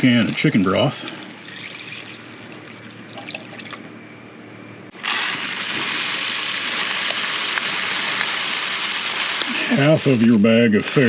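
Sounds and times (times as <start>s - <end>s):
liquid trickling into pan: 0.4s - 3.9s
loud sizzling hiss: 4.9s - 11.0s.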